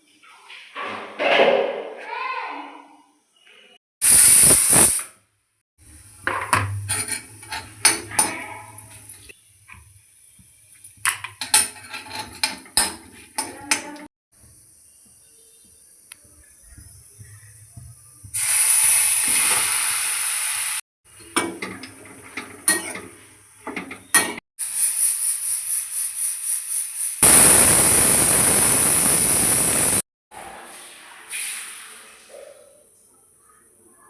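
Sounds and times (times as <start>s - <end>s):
food sizzling in a pan: 4.0s - 5.1s, 5.8s - 14.1s, 18.3s - 20.8s, 24.6s - 30.0s
metal utensils knocking cookware: 6.3s - 9.2s, 11.1s - 14.1s, 21.2s - 24.4s.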